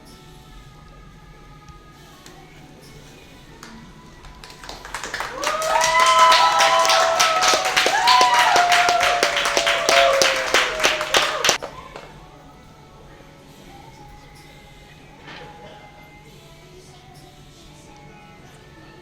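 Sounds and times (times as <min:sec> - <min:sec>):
crowd clapping and cheering: 0:03.6 - 0:12.1.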